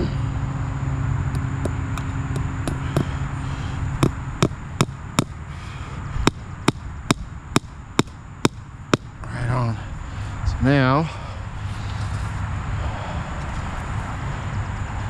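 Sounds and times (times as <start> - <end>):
low machine hum: 0.0 - 15.0
hammer striking staples: 6.2 - 9.1.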